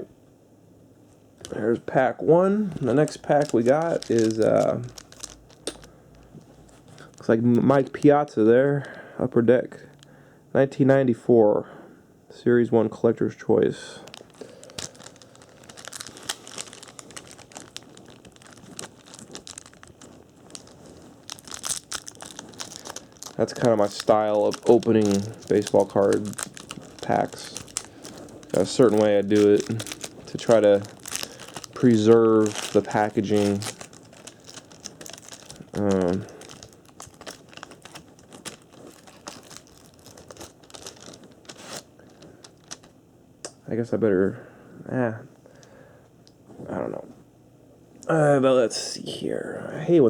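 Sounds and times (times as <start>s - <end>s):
wrapper crinkling: 1.4s - 9.0s, 13.7s - 43.0s
wrapper tearing: 2.7s - 8.1s, 14.0s - 42.9s.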